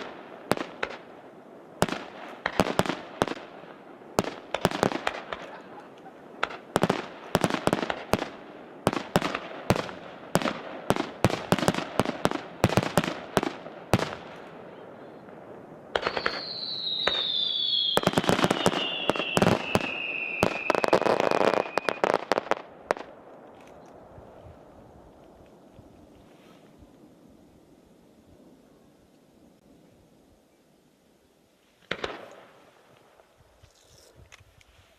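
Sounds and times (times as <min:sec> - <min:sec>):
fireworks bangs and crackles: 0:00.0 - 0:27.4, 0:31.8 - 0:33.3
whistling firework shells: 0:08.9 - 0:24.0.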